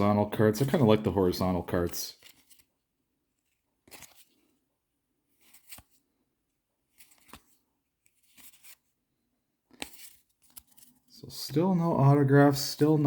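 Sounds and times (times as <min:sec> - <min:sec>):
cards sliding off a stack: 0:03.8 - 0:04.4, 0:05.3 - 0:06.0, 0:06.9 - 0:08.8, 0:09.7 - 0:11.0.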